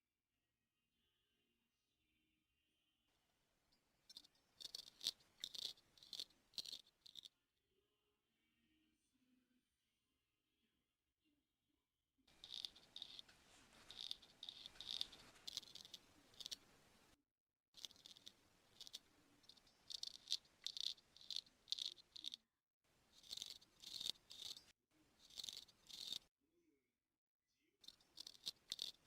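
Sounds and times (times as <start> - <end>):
grooming tool scratching in ear: 4.1 - 7.3, 12.3 - 17.2, 17.8 - 22.4, 23.1 - 26.3, 27.8 - 29.0.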